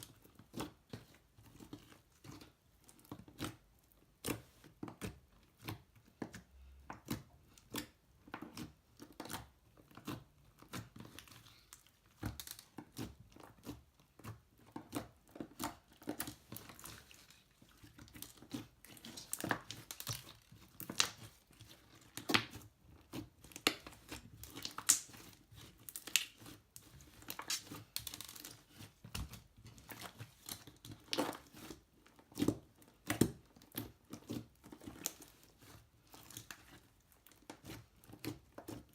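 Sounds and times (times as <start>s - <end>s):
sticky slime clicks and crackles: 2.2s - 26.6s.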